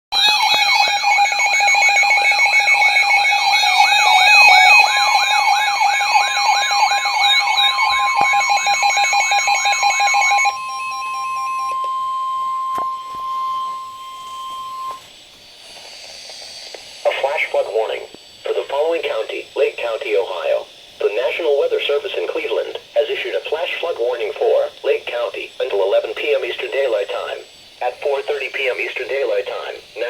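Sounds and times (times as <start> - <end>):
warbling siren alarm: 0.1 - 22.0
steady high alarm tone: 0.1 - 30.0
rapid beeping tones: 0.2 - 15.1, 15.9 - 30.0.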